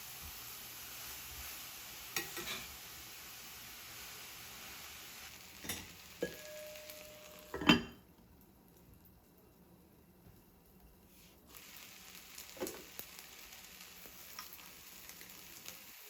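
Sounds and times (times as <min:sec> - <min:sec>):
food sizzling in a frying pan: 0:00.0 - 0:08.8, 0:11.1 - 0:16.0
utensil clinking on pan: 0:05.6 - 0:08.0.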